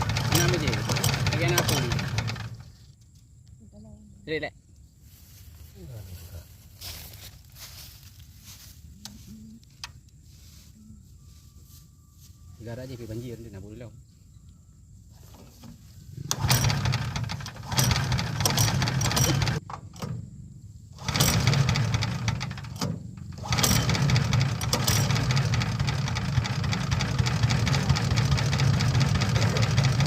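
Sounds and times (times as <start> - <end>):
small engine starting and running: 0.0 - 3.0, 16.2 - 20.2, 20.9 - 30.0.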